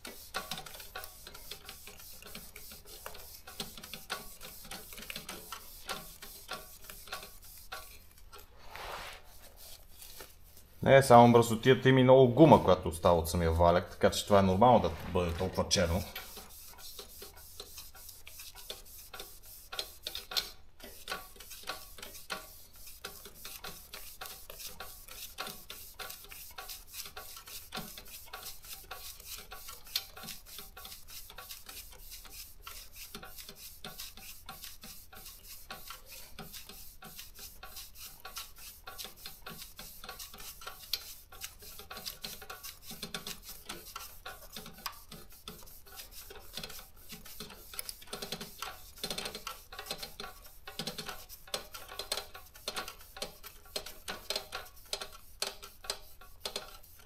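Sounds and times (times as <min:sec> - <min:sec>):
wet wipe scrubbing rubber: 0:00.0 - 0:10.7, 0:14.5 - 0:57.0
small irregular clicks: 0:17.0 - 0:57.0.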